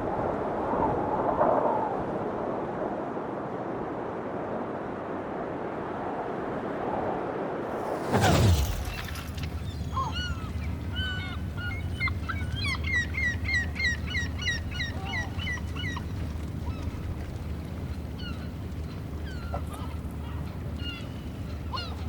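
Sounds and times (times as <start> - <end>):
low rumble of wind or water: 0.0 - 22.0
loud whoosh: 7.7 - 9.9.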